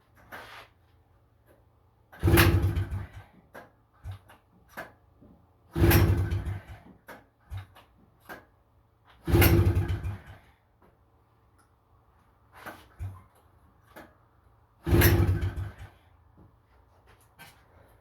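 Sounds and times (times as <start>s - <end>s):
two-stroke engine cranking: 2.1s - 3.4s, 5.7s - 7.8s, 9.2s - 10.5s, 14.8s - 16.0s.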